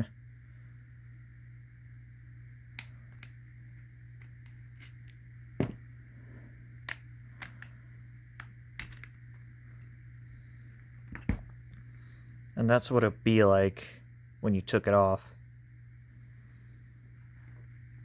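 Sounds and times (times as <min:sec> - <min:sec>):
steady low hum: 0:00.0 - 0:18.0
clicks and knocks of parts handled: 0:06.8 - 0:07.8, 0:08.4 - 0:09.9.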